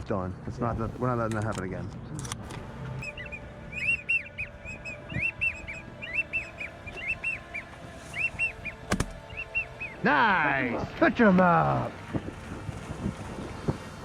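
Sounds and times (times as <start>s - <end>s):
duck wheezy whistles: 3.0s - 10.0s.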